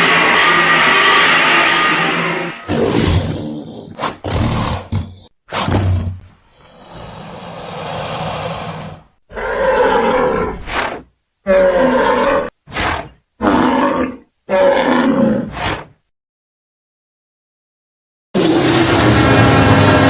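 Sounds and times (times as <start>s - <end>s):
monster growling roars: 0.0s - 5.0s, 6.7s - 10.9s, 18.4s - 20.0s
breathy hiss: 6.4s - 9.1s.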